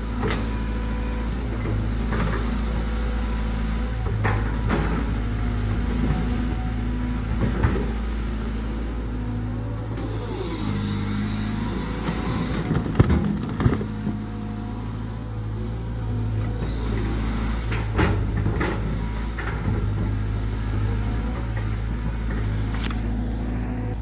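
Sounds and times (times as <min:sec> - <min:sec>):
heavy diesel engine running: 0:00.0 - 0:24.0.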